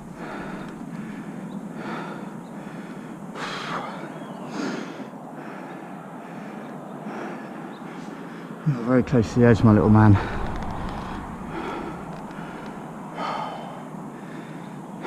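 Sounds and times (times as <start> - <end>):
background hiss: 7.3 - 15.0
person breathing close to microphone: 10.2 - 14.8.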